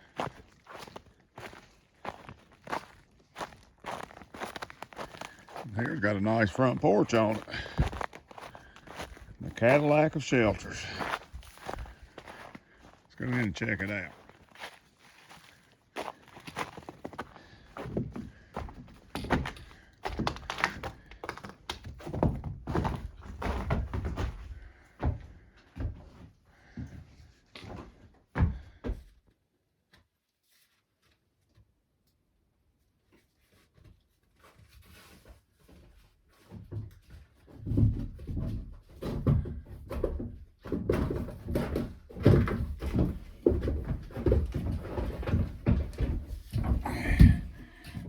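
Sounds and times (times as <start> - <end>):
boots stepping on wooden floor: 0.0 - 27.0, 41.0 - 48.0
dull thumps and knocks: 16.0 - 26.2, 37.5 - 48.0.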